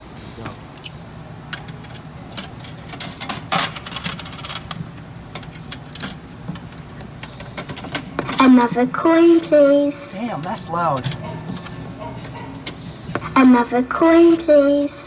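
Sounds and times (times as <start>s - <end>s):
coins clinking in coin mechanism: 1.6s - 4.8s.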